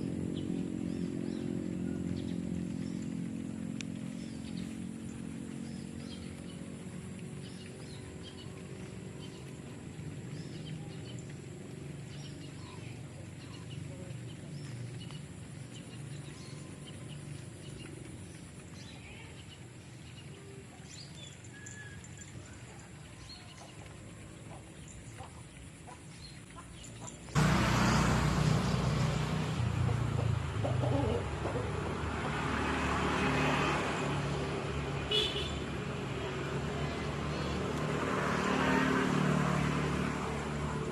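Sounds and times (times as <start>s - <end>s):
loud rushing noise: 27.4s - 30.6s
chickens: 29.9s - 32.0s.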